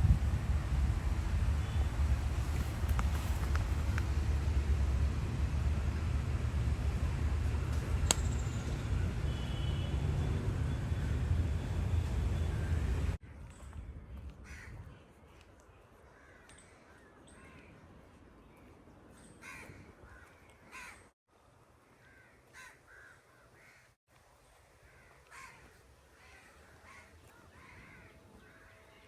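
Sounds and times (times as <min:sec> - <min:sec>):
crows cawing: 0:14.5 - 0:14.7, 0:16.1 - 0:17.6, 0:19.4 - 0:21.1, 0:22.0 - 0:23.9, 0:24.8 - 0:28.8.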